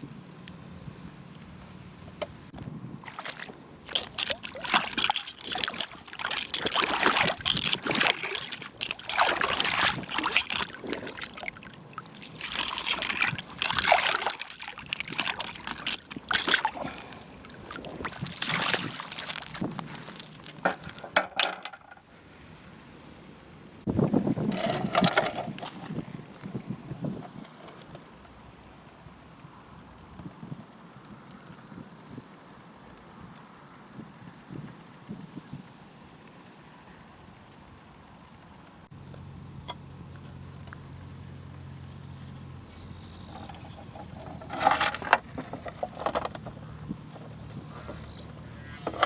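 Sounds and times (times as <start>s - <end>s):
shallow water splashing: 3.0s - 21.1s.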